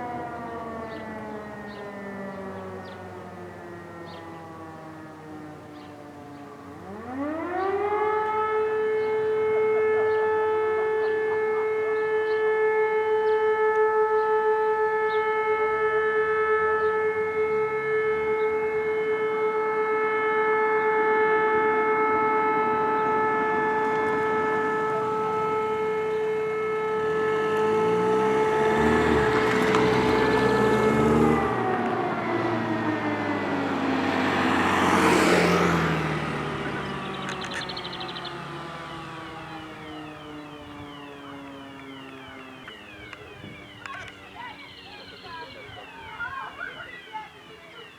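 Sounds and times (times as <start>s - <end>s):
broad noise: 35.7s - 47.9s
alarm siren winding: 36.7s - 47.9s.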